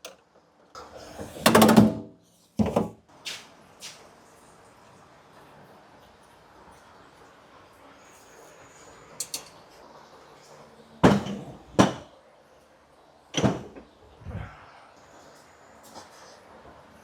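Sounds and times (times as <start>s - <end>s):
doors banging shut: 13.4s - 13.9s.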